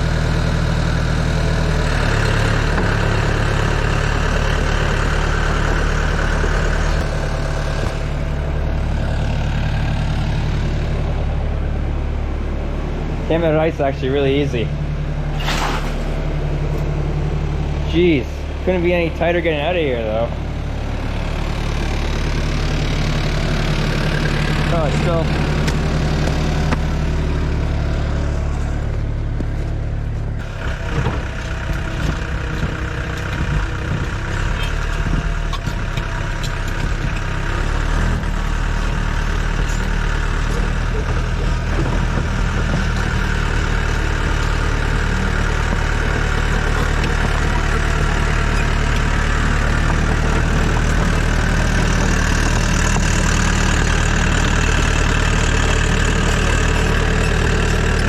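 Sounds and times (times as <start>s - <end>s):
excavator diesel engine running: 0.0s - 58.0s
clanks and knocks: 30.4s - 53.1s.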